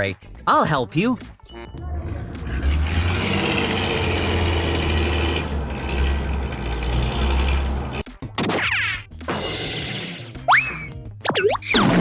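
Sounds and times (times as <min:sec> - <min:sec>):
cartoon vehicle engine humming: 0:01.5 - 0:08.1.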